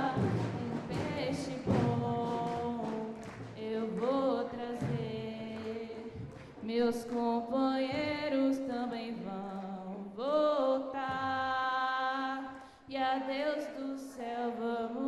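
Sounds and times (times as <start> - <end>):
young singers singing in unison: 0.0 - 10.0.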